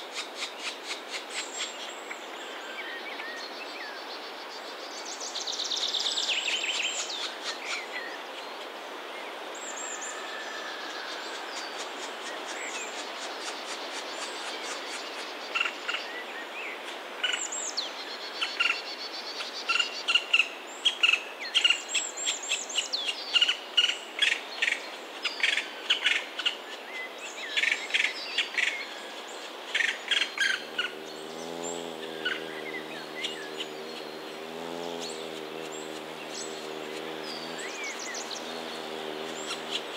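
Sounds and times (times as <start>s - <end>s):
steady background hiss: 0.0s - 39.9s.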